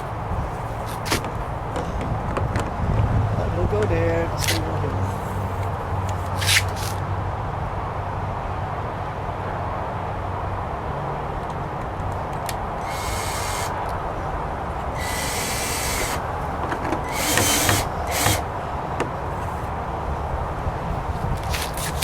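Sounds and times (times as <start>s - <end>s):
power drill driving screws: 12.8s - 13.8s, 14.9s - 16.3s, 17.0s - 18.5s.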